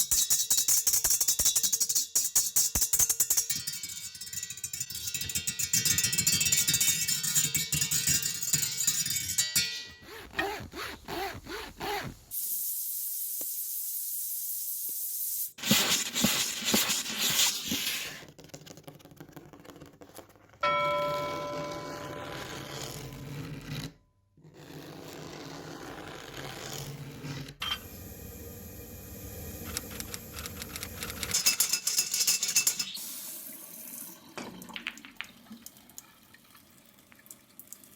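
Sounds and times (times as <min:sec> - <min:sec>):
bell-like chime: 0:20.6 - 0:23.1.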